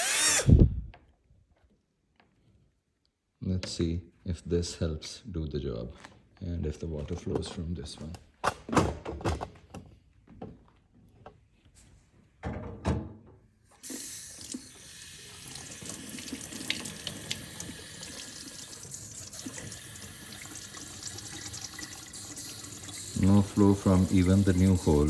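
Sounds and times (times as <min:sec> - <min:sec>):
water running through nozzles: 0:13.8 - 0:25.0.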